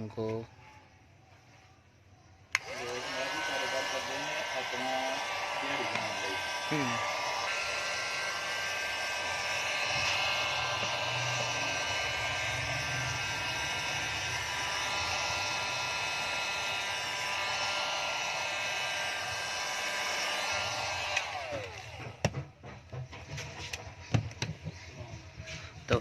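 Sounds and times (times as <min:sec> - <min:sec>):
hot air gun blowing: 0:02.6 - 0:22.2.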